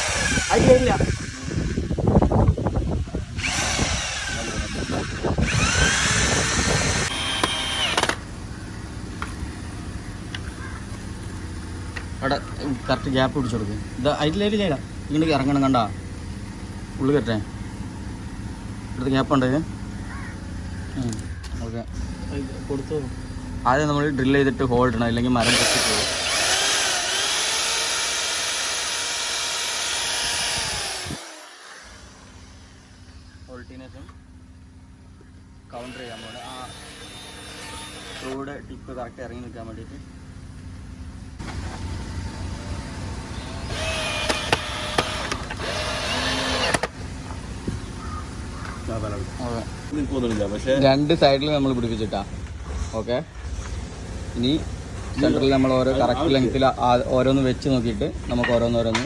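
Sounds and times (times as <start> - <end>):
power drill drilling into wood: 0.0 - 1.7, 3.4 - 8.2, 25.4 - 33.2, 35.7 - 38.4, 43.4 - 47.0.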